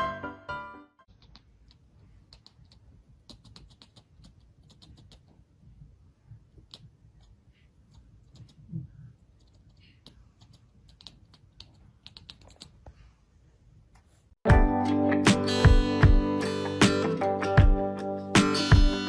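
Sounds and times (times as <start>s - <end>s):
background music: 0.0s - 1.0s, 14.5s - 19.0s
low room noise: 1.0s - 14.4s.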